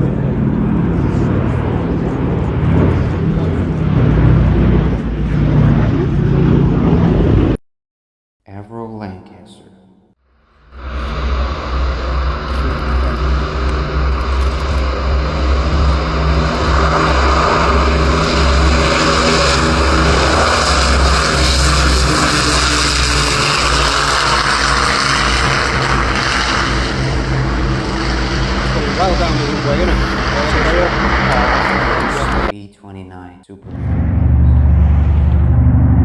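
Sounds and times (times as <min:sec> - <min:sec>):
propeller aircraft engines droning: 0:00.0 - 0:07.6, 0:10.5 - 0:32.5, 0:33.7 - 0:36.0.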